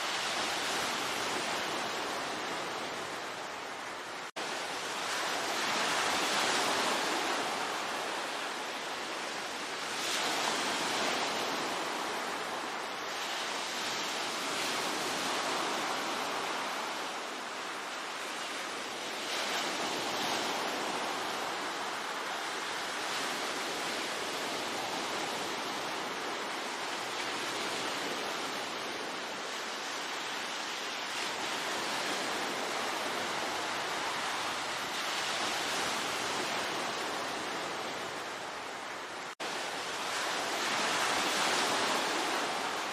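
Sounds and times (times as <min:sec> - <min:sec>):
ocean waves breaking on shore: 0:00.0 - 0:42.9.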